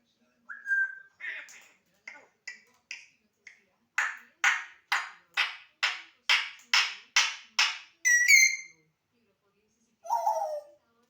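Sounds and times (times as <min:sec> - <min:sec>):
parrot whistled squeak: 0:08.1 - 0:08.8.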